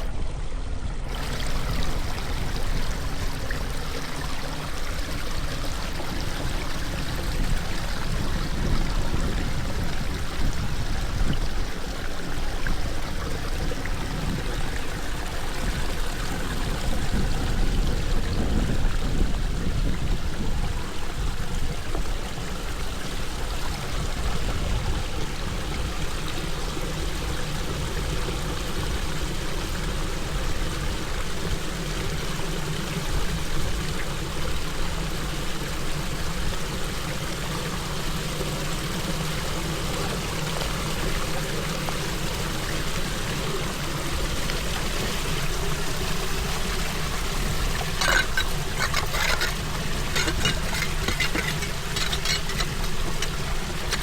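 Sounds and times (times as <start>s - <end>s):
water pouring into a drain: 1.0s - 54.0s
clicks and knocks: 48.0s - 54.0s.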